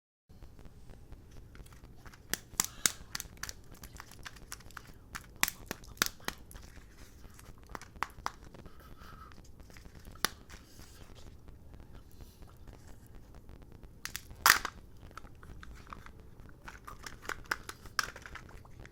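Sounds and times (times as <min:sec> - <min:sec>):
wrapper crinkling and tearing: 0:01.5 - 0:08.6, 0:09.4 - 0:11.4, 0:14.0 - 0:18.9.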